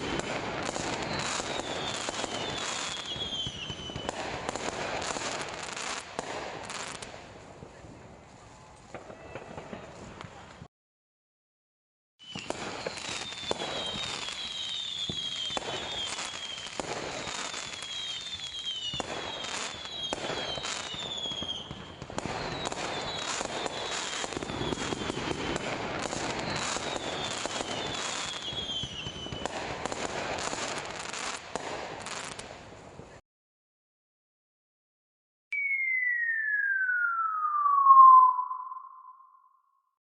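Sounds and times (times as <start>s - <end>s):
falling firework whistles: 0.0s - 7.1s, 12.2s - 32.5s, 35.5s - 39.6s
fireworks bangs and crackling pops: 0.0s - 10.7s, 12.2s - 33.2s.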